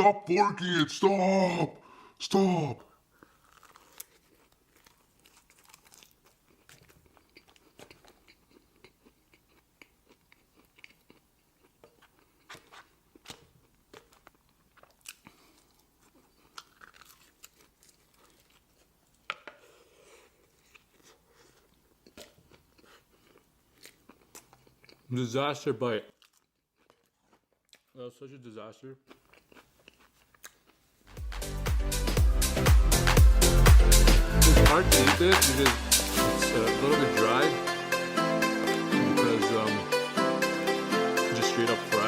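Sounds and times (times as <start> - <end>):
person chewing and crunching food: 3.1 - 25.1, 26.1 - 28.0, 29.0 - 34.3.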